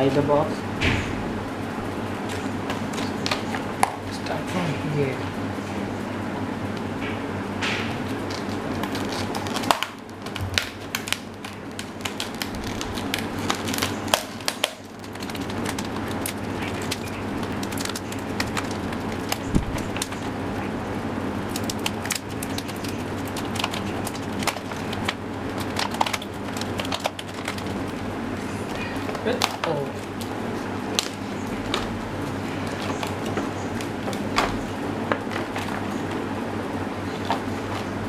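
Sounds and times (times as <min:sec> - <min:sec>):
steady low hum: 0:00.0 - 0:38.0
packaging crinkling: 0:08.0 - 0:38.0.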